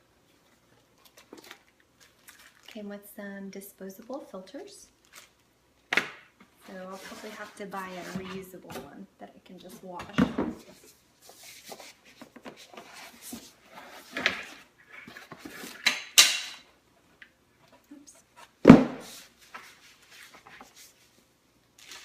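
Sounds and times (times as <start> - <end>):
rustling scrapes: 6.6 - 8.5, 10.6 - 15.8, 18.2 - 21.2.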